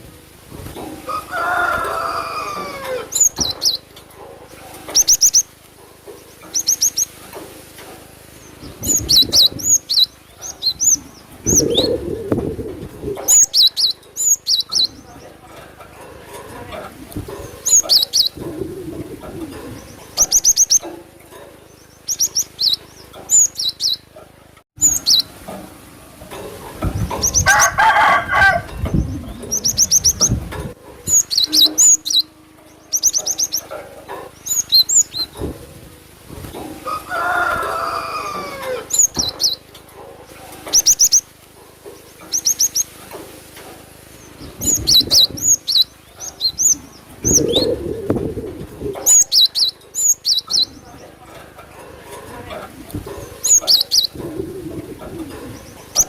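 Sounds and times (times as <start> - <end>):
bird calls high sharp notes: 31.0 - 33.7.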